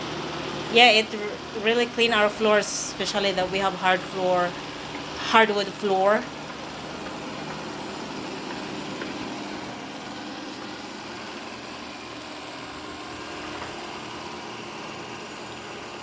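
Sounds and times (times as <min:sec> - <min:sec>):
robot vacuum motor hum: 0:00.0 - 0:16.0.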